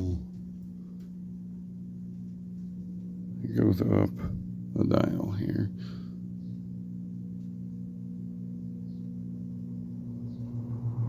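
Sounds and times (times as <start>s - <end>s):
fan motor humming: 0.0s - 11.0s
rush of air from fan: 10.0s - 11.0s.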